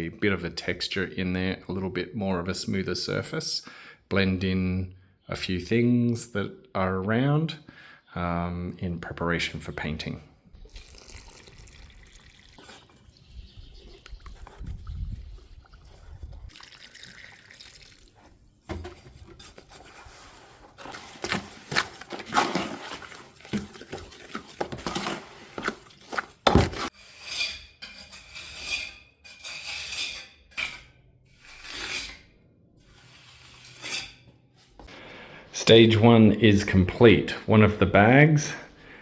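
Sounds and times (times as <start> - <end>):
plaster sloshing and stirring: 10.7 - 30.8
metal scraping bucket: 18.1 - 34.8.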